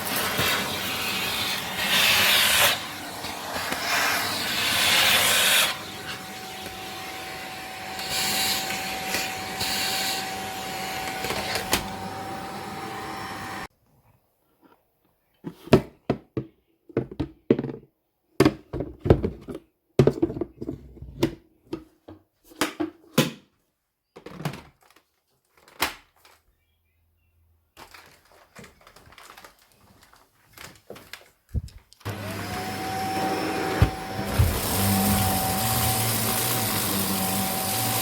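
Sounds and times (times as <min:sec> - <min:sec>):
vacuum cleaner motor whine: 0:00.0 - 0:13.7, 0:32.1 - 0:38.0.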